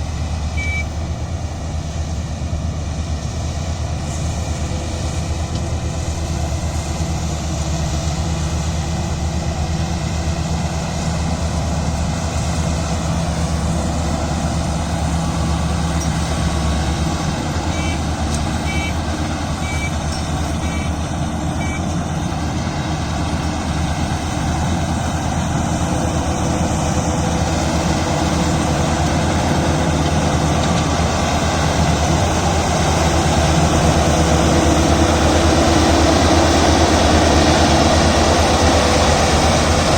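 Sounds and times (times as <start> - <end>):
combine harvester engine running: 0.0 - 39.9
short high beeps: 0.6 - 1.0, 18.6 - 19.0, 19.6 - 20.0, 20.6 - 20.9, 21.6 - 21.8.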